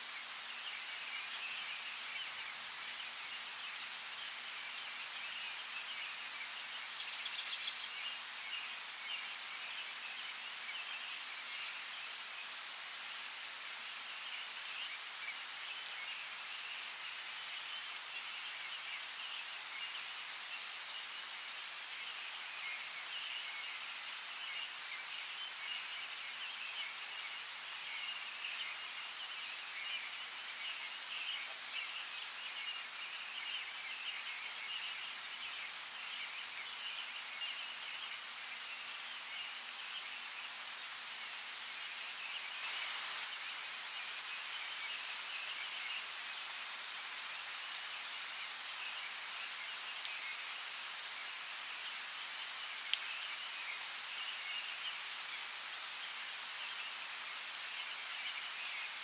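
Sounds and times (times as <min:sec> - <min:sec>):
rain hissing: 0:00.0 - 0:59.0
raindrops pattering: 0:39.0 - 0:59.0.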